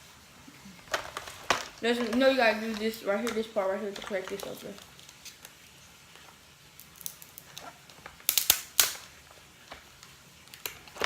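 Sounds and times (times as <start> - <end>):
seafood shell cracking: 8.2 - 9.0.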